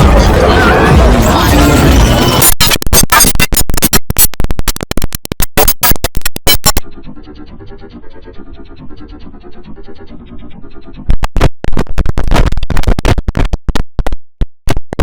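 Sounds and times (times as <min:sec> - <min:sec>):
stuttering distorted shutdown jingle: 0:00.0 - 0:06.9.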